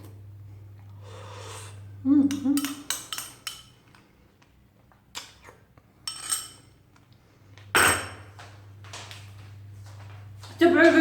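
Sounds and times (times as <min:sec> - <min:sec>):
dishes and cutlery clinking: 0:02.3 - 0:04.0, 0:06.0 - 0:06.8, 0:07.8 - 0:08.4.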